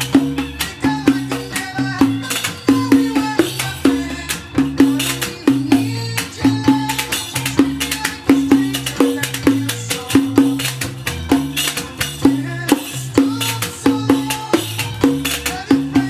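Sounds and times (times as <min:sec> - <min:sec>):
jingled frame drum playing: 0:00.0 - 0:16.0
recorded pop song: 0:00.0 - 0:16.0.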